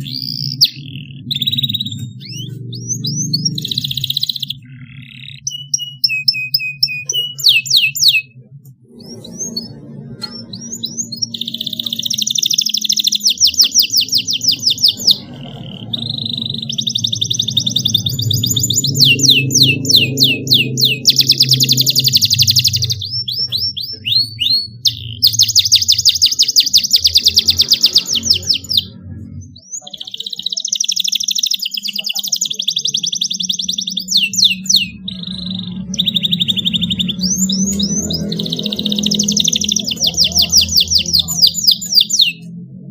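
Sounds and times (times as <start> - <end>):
canary singing: 0.0 - 42.9
low hum: 26.9 - 29.8, 33.3 - 42.9.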